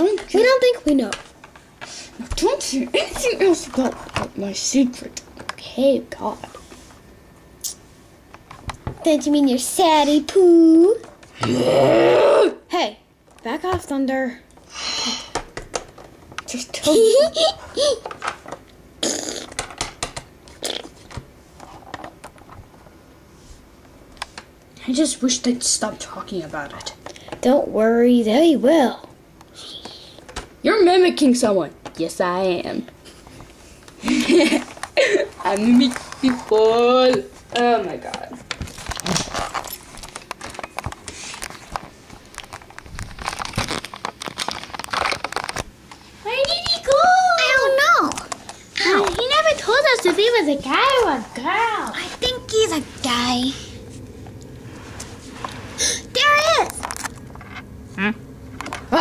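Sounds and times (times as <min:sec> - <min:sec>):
crinkling rustles: 0:38.2 - 0:47.0, 0:53.9 - 0:57.6.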